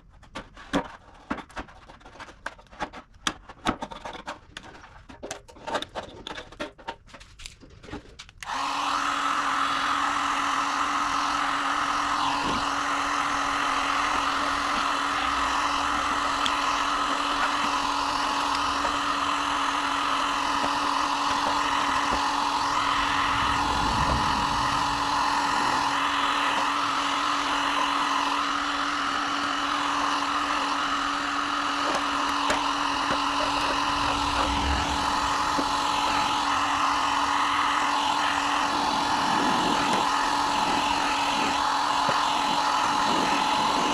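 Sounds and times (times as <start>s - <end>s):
power tool grinding metal: 11.3s - 43.9s.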